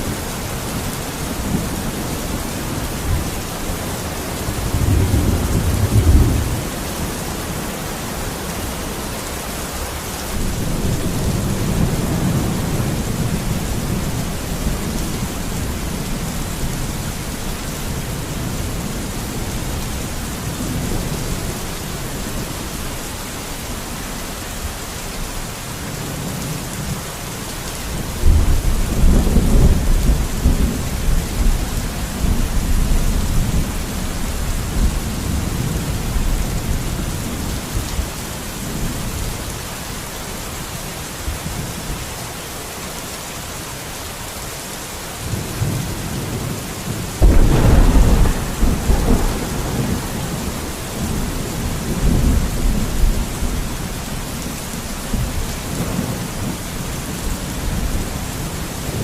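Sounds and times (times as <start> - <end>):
rain hissing: 44.9 - 59.0
thunder rolling: 47.2 - 53.6.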